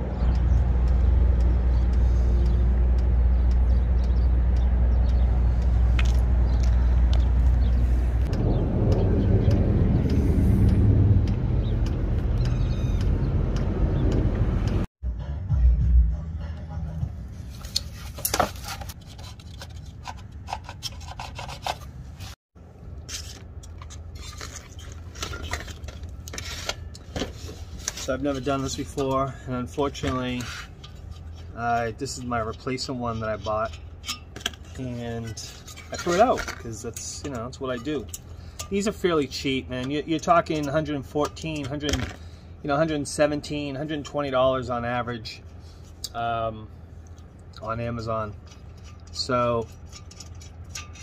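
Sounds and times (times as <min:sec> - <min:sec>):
rubbing and scraping: 0:17.4 - 0:22.4, 0:23.0 - 0:39.0, 0:48.0 - 0:51.0.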